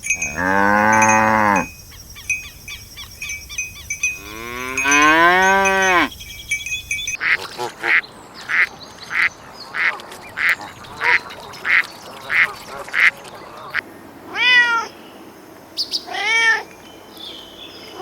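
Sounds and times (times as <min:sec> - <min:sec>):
cat meowing: 0:14.3 - 0:14.9, 0:16.1 - 0:16.6.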